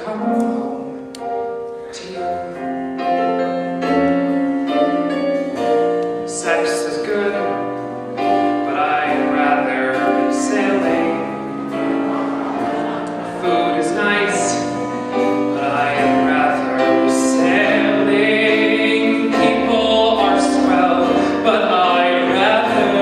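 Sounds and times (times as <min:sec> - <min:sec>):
piano accompaniment: 0:00.0 - 0:23.0
man singing a ballad: 0:06.2 - 0:11.6, 0:13.3 - 0:23.0.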